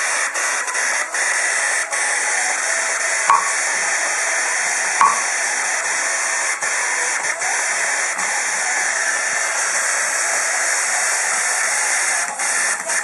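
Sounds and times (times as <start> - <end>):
short beeps: 3.3 - 3.6, 5.0 - 5.3.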